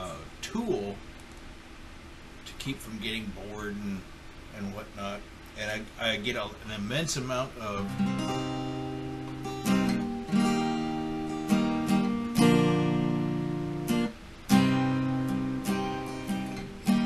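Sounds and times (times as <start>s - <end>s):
acoustic guitar strumming chords: 7.4s - 17.0s.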